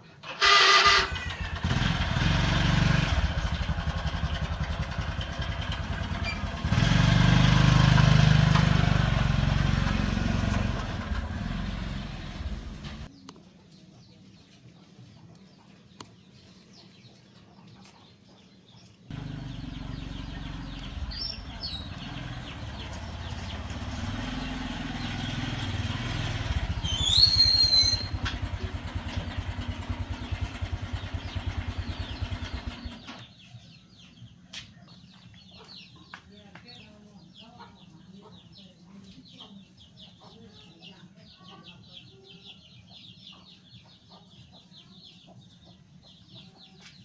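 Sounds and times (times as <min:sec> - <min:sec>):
small engine pulsing: 0:00.2 - 0:13.1, 0:19.1 - 0:33.3
high-pitched rising squeal: 0:26.8 - 0:28.4.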